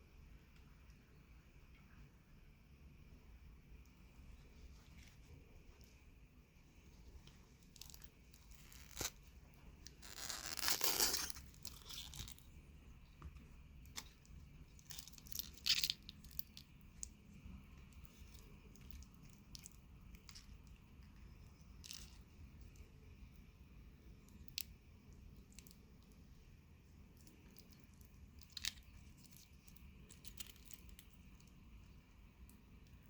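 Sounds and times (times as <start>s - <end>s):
wrapping tearing and crinkling: 7.6s - 12.5s, 13.9s - 17.2s
small clicks and handling noises: 27.0s - 33.0s.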